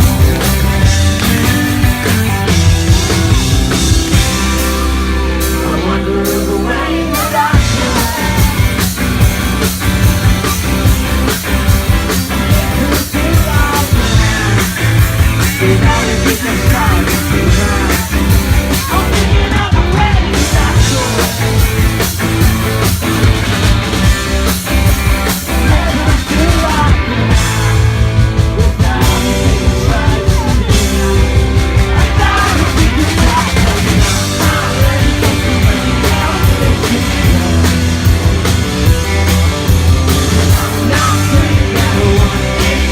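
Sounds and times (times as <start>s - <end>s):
drums: 0.0s - 42.9s
rock band playing live: 0.0s - 42.9s
person singing: 4.1s - 9.0s, 12.4s - 21.9s, 25.2s - 27.8s, 28.4s - 38.1s, 40.2s - 42.9s.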